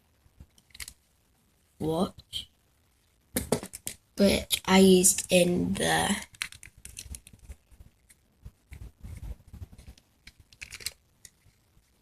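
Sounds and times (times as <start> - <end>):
object handled with clicks and rustling: 6.3 - 11.7.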